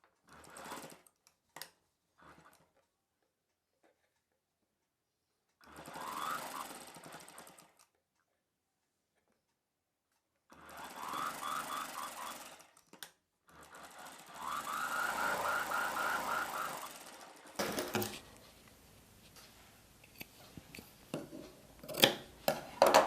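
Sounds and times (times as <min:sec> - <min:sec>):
sewing machine stitching: 0:00.1 - 0:02.9, 0:05.6 - 0:08.0, 0:10.5 - 0:18.3
click: 0:01.2 - 0:01.8, 0:12.8 - 0:13.2.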